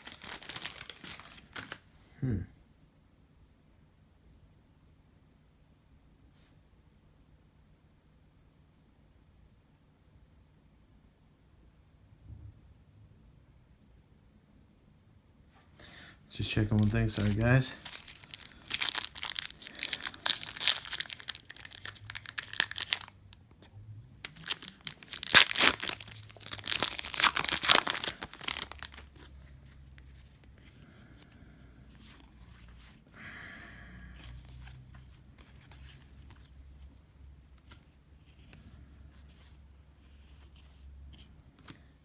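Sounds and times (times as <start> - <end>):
plastic wrapper tearing and crinkling: 0.0 - 1.8, 16.4 - 23.3, 24.2 - 30.4
faint handling sounds: 0.0 - 2.0, 15.5 - 42.0.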